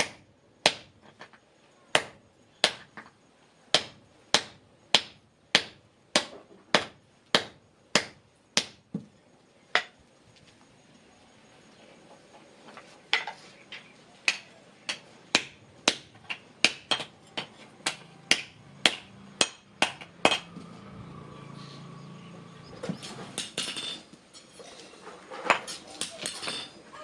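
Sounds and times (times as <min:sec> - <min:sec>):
hammer striking hot iron: 0:01.9 - 0:03.1, 0:03.7 - 0:08.8, 0:14.3 - 0:20.6, 0:23.0 - 0:24.5, 0:25.5 - 0:26.8.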